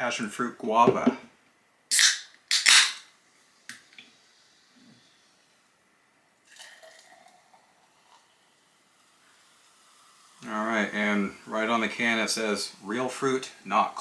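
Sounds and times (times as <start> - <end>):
can opening pop and hiss: 1.9 - 3.1.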